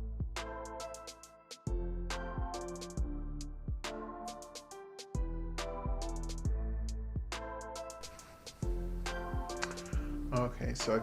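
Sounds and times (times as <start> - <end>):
regular kick drum: 0.2 - 0.5, 1.7 - 4.0, 7.2 - 7.4, 8.6 - 11.0.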